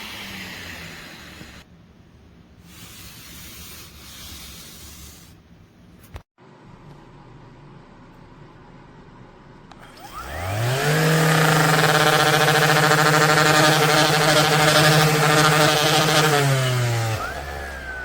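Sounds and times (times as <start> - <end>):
electric sander motor humming: 10.0 - 18.0.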